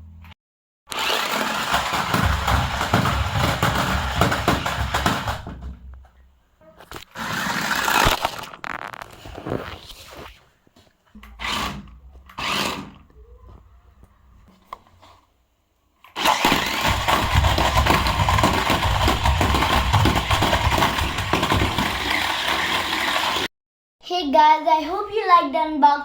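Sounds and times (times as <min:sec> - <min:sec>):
toy car electric motors whirring: 0:00.9 - 0:05.4, 0:06.9 - 0:09.1, 0:11.2 - 0:13.2, 0:16.1 - 0:23.5
plastic wheels and body rattling: 0:00.9 - 0:05.8, 0:06.9 - 0:09.9, 0:16.2 - 0:23.5.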